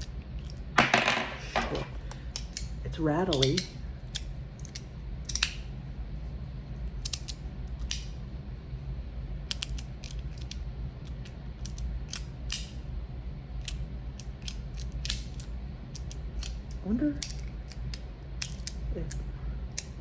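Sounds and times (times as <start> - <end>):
plates rattling: 0.8 - 2.0.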